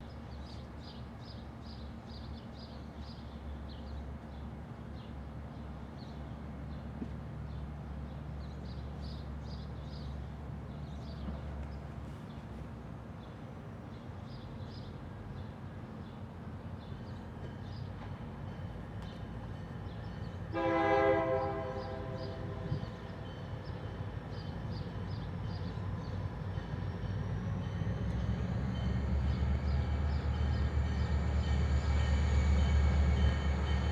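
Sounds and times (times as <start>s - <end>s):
diesel locomotive rumbling: 0.2s - 33.9s
train horn blast: 20.5s - 23.2s.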